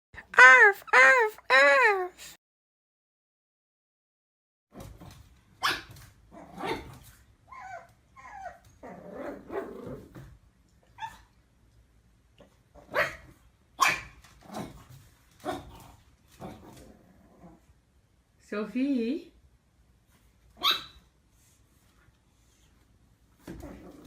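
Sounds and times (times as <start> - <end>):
dog barking: 13.8 - 14.1, 20.6 - 21.0.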